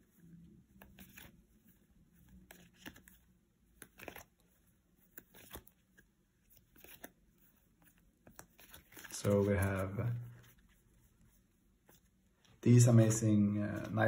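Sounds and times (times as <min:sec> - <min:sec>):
trading cards clicking and rustling: 0:00.6 - 0:10.7, 0:13.6 - 0:14.0.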